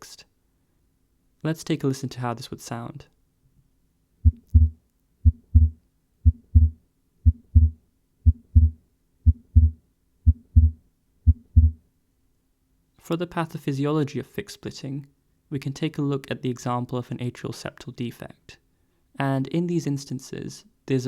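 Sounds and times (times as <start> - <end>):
heartbeat sounds: 4.2 - 11.8.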